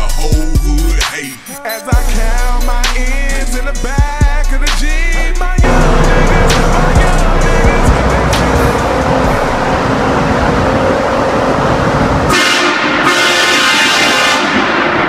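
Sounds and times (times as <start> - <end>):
steady rushing noise: 5.6 - 13.1
air horn chord: 5.6 - 15.0.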